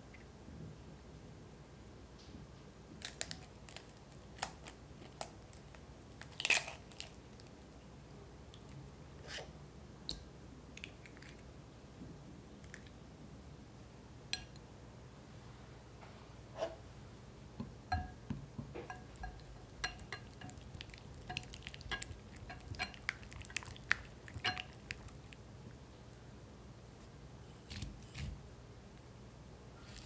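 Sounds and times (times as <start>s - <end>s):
utensil tapping against bowl: 17.6s - 23.2s.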